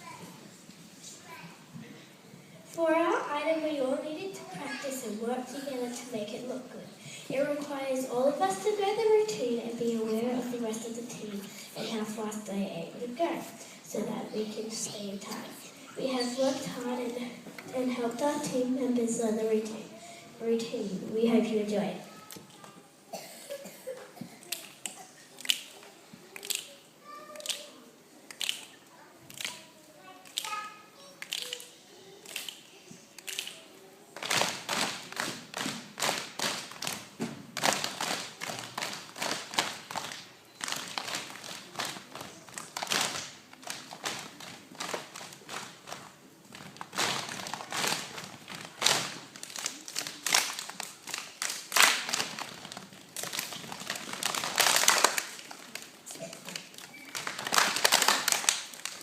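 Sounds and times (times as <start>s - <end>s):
children clapping and slapping: 24.2s - 27.7s, 28.3s - 59.0s.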